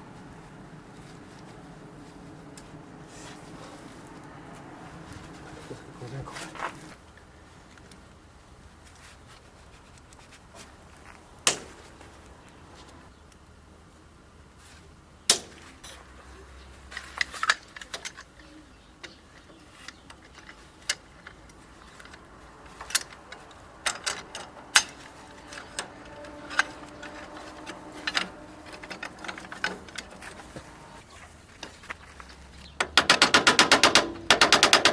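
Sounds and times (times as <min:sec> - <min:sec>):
metallic clicks and knocks: 0:17.0 - 0:31.0, 0:32.6 - 0:34.9.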